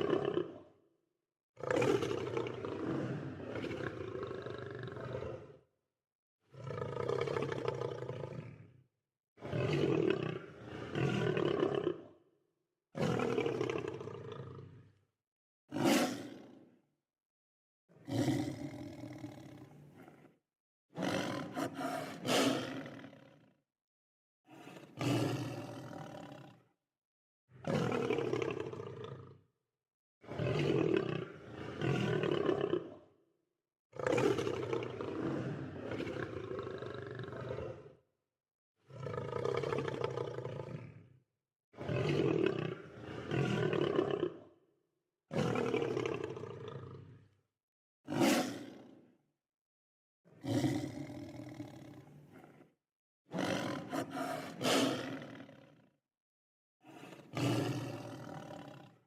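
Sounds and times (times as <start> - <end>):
lion roaring: 6.5 - 8.6, 18.0 - 20.3, 21.0 - 23.2, 31.0 - 32.6, 35.1 - 37.9, 38.9 - 41.0, 48.1 - 48.8, 50.4 - 52.7, 53.3 - 55.8, 56.9 - 59.0.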